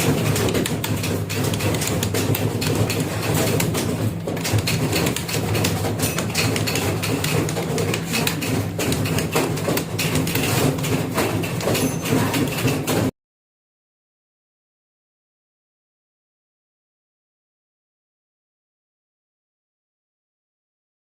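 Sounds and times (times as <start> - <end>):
fast typing on a keyboard: 0.0 - 13.1.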